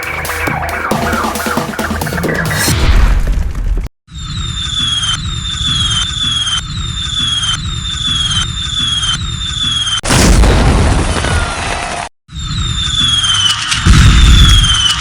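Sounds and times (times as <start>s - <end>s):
firework falling whistle: 12.3s - 15.0s.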